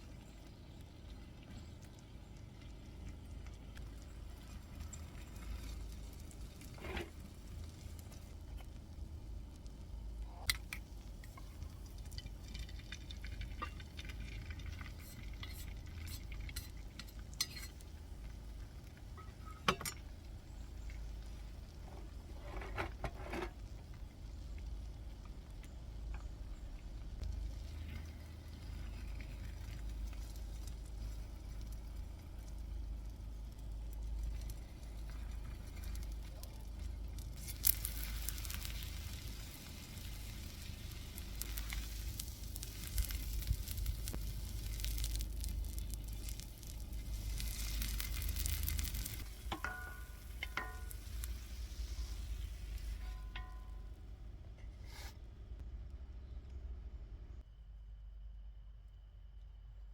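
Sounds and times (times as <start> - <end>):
utensils and cookware clinking: 14.9 - 17.8, 49.4 - 51.1.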